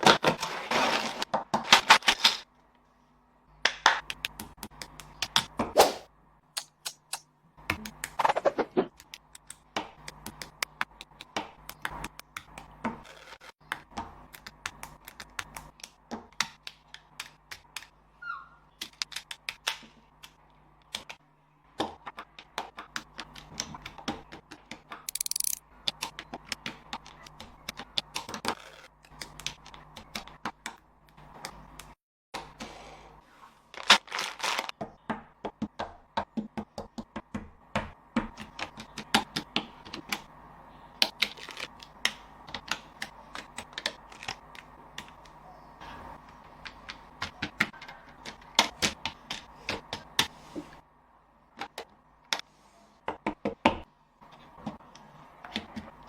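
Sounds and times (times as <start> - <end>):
plastic bricks clicking together: 25.0 - 26.1.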